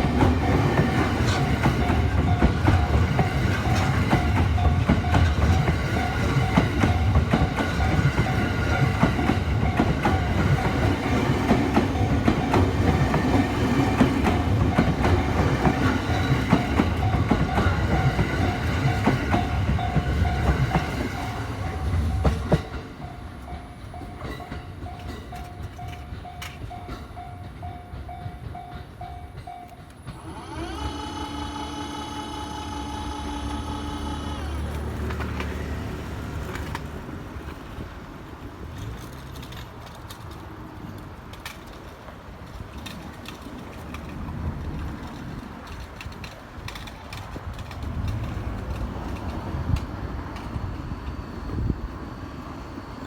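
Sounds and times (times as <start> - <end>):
level crossing warning bell: 0.0 - 35.0
train rumbling past: 0.0 - 53.0.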